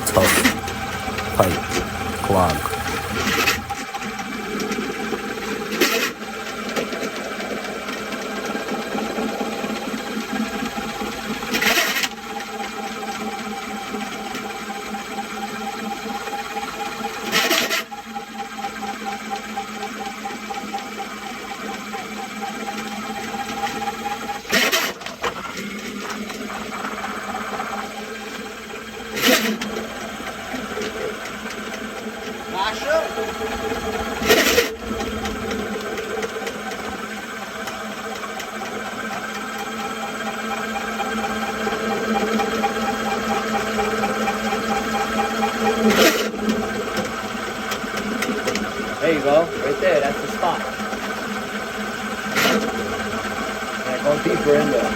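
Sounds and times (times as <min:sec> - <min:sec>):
drain-cleaning machine running: 0:00.0 - 0:03.8, 0:30.1 - 0:54.9.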